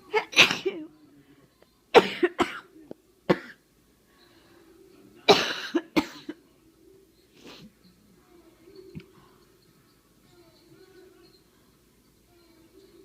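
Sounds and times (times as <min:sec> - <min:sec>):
person coughing: 0:02.0 - 0:02.7, 0:05.3 - 0:06.4.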